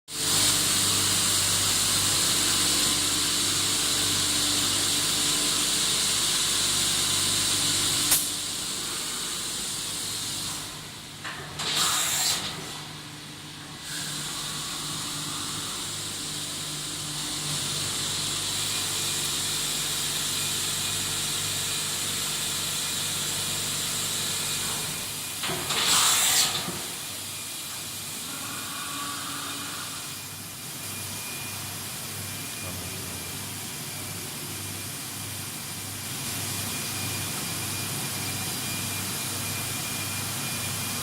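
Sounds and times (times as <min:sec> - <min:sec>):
machine hiss: 0:13.8 - 0:33.8.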